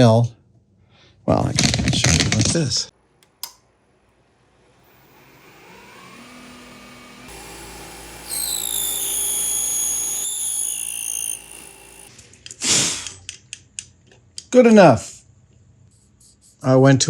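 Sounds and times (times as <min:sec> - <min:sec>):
end mill cutting whine: 0:04.8 - 0:12.1
milling machine motor spinning up: 0:04.8 - 0:12.1.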